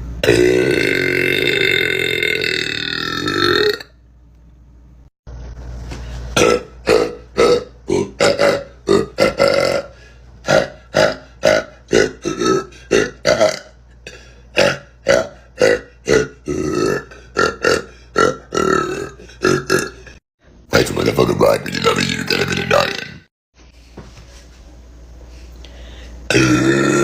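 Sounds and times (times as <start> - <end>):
woman burping: 0.2 - 3.9, 6.4 - 9.9, 10.5 - 20.2, 26.3 - 27.0.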